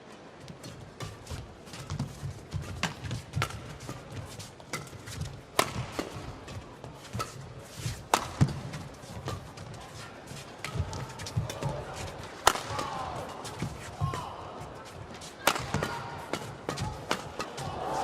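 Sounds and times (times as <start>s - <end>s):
rackets striking shuttlecock: 4.6s - 6.5s, 8.0s - 9.5s, 10.6s - 13.2s, 15.4s - 17.8s.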